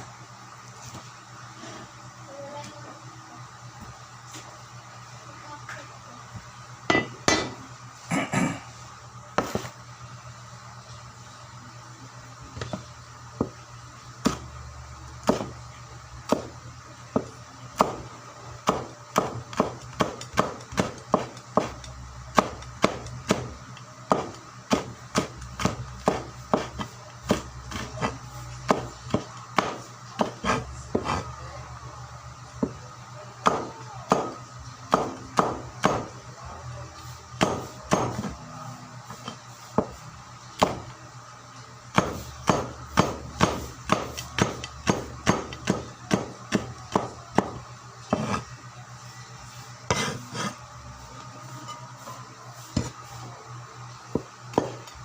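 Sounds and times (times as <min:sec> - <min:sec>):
knife chopping on wooden board: 0:18.6 - 0:23.5, 0:24.1 - 0:31.2, 0:34.9 - 0:36.1, 0:37.4 - 0:38.3, 0:41.9 - 0:48.4, 0:49.9 - 0:50.6, 0:54.1 - 0:54.8.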